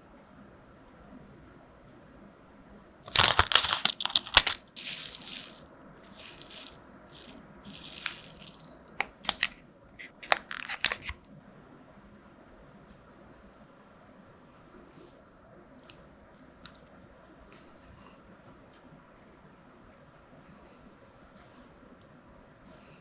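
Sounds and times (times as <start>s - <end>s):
crinkling handling sounds: 3.0s - 11.2s.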